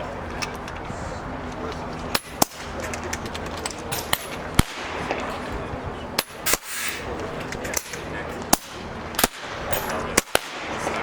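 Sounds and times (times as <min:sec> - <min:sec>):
steady low hum: 0:00.0 - 0:11.0
air rifle shots cracking: 0:03.9 - 0:05.4, 0:06.2 - 0:11.0.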